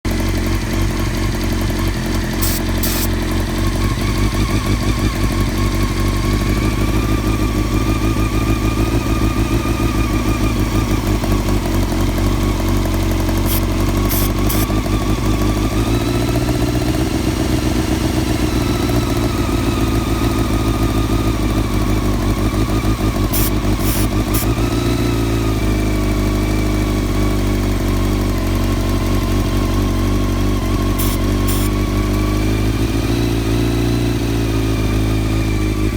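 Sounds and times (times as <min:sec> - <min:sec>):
motorcycle engine idling unevenly: 0:00.1 - 0:35.9.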